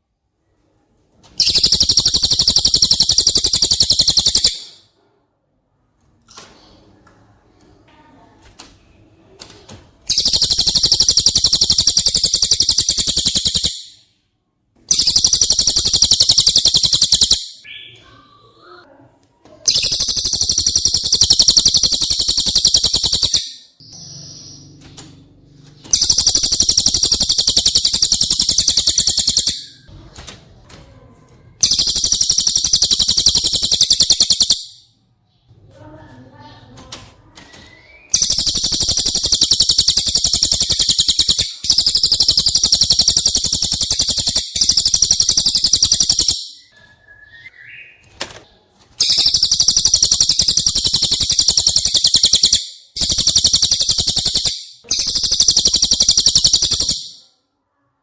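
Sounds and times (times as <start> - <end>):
high-pitched bird trills: 1.4 - 4.9, 10.1 - 14.1, 14.9 - 18.5, 19.7 - 24.8, 25.8 - 29.9, 31.6 - 34.9, 37.6 - 48.0, 49.0 - 57.3.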